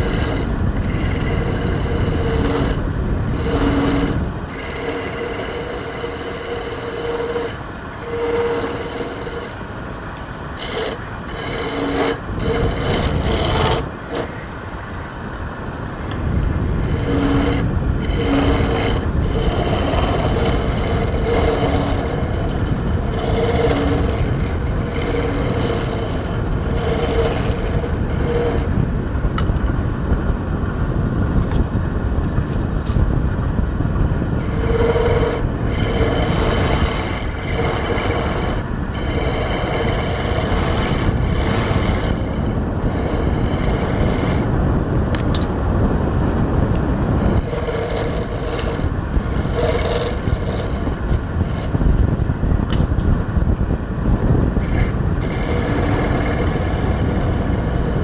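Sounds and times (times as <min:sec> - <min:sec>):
woodworking power tool running: 0:00.0 - 0:14.5, 0:16.0 - 0:28.7, 0:34.4 - 0:45.6, 0:46.7 - 0:53.1, 0:54.4 - 0:58.0.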